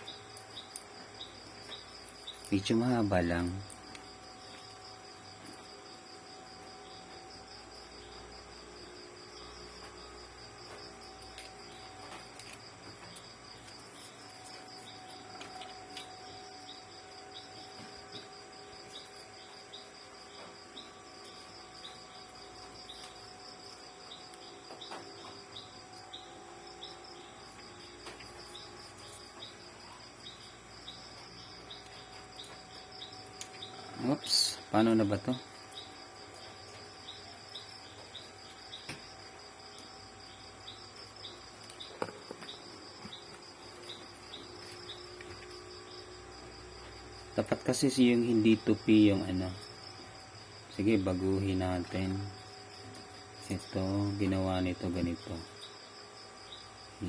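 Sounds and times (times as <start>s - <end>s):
crickets trilling: 0.0s - 57.0s
slower insect chirping: 0.0s - 57.0s.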